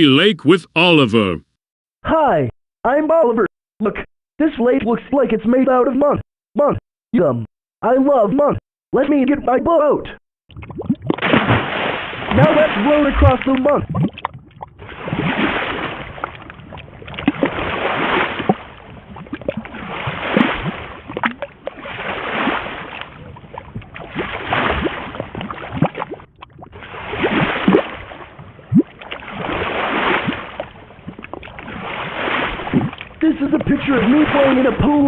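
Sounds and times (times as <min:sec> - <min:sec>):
oars splashing through water: 0:11.2 - 0:35.0.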